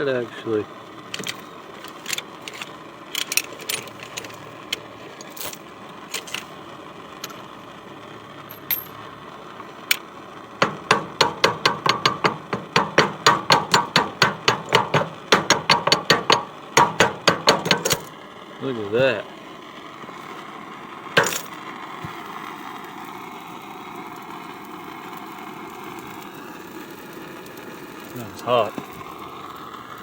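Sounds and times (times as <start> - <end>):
scattered taps and clinks: 1.2 - 2.6, 8.5 - 9.0, 10.6 - 18.1, 21.2 - 21.5
hammer blows ringing on metal: 10.6 - 18.1.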